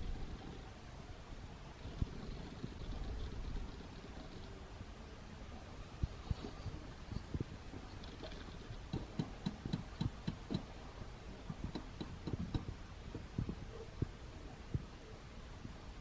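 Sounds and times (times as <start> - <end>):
soft low thumps: 6.0 - 15.0.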